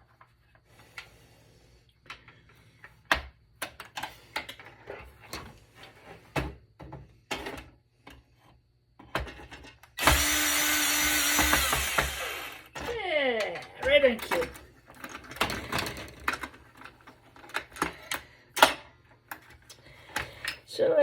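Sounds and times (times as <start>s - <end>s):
power drill driving screws: 10.0s - 12.8s.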